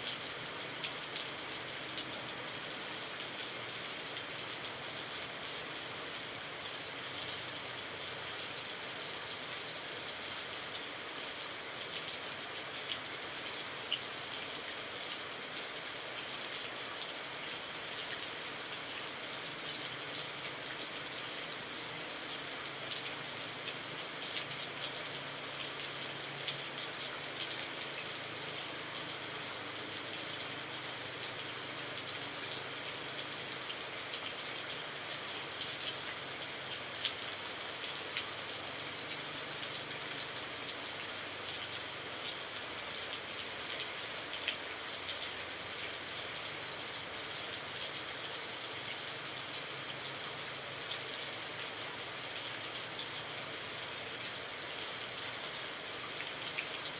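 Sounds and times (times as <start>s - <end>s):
steady rain hiss: 0.0s - 56.9s.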